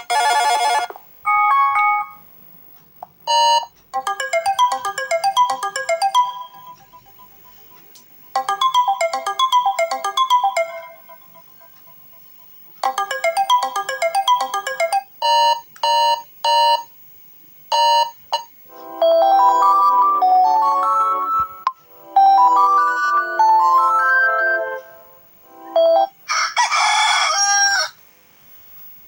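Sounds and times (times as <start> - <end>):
ringtone tune with held notes: 0.0 - 2.2, 3.3 - 16.8, 17.7 - 26.2
electronic ringtone notes: 1.3 - 2.2, 3.3 - 16.8, 18.7 - 26.2.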